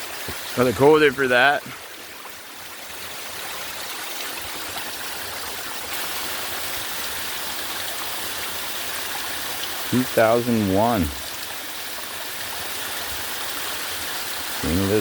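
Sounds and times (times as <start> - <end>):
waterfall rushing: 0.0 - 1.8, 14.6 - 15.0.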